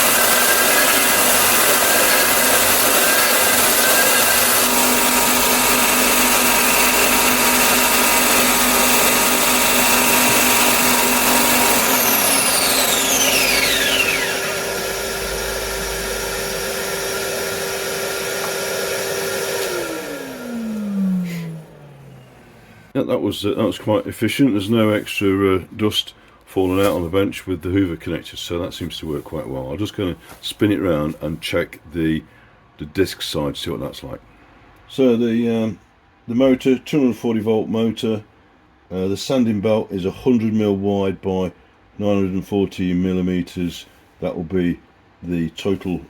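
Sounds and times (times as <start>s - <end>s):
sander high whine: 0.0s - 23.0s
vacuum cleaner hum: 0.0s - 23.0s.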